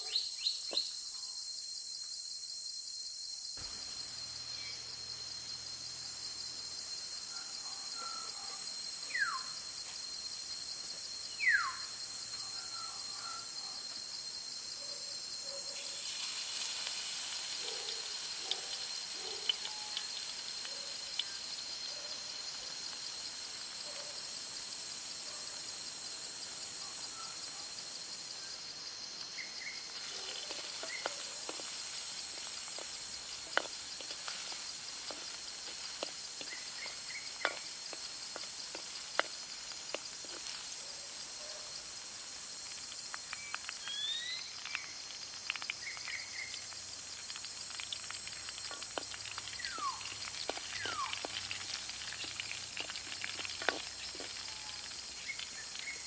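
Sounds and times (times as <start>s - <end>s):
insects droning: 0.0s - 56.0s
bird chirps: 43.8s - 44.8s.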